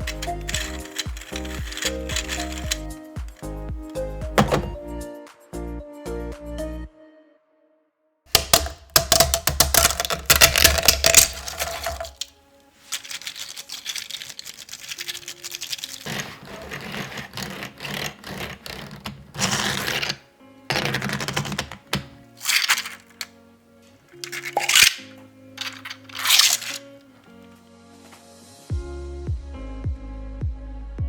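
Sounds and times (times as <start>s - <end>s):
rapid plastic clicking and rattling: 0.0s - 3.5s, 12.9s - 19.1s, 25.6s - 26.8s
background music: 0.0s - 7.3s, 8.3s - 31.0s.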